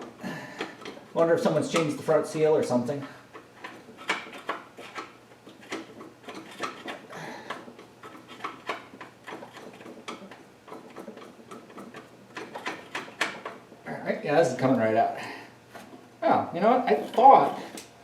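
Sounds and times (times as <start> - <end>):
metal tools clicking and knocking: 3.3 - 13.6.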